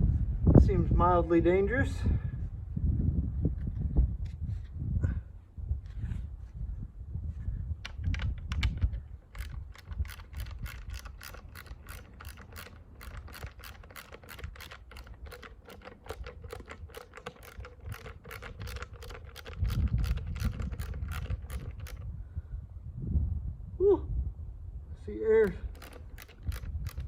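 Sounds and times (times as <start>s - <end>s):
low rumbling handling noise: 5.6s - 22.3s, 25.4s - 27.0s
hand ratchet clicking: 7.8s - 22.1s, 25.4s - 27.0s.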